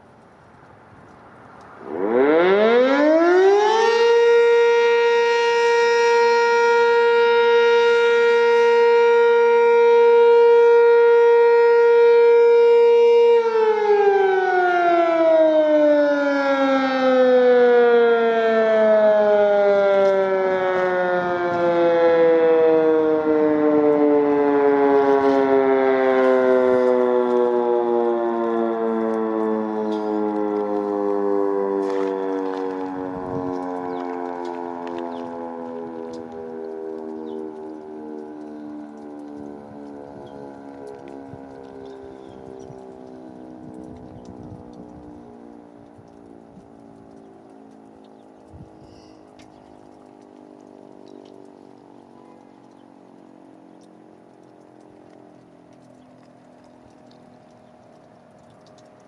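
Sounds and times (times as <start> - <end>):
siren winding up and down: 1.8 - 47.1.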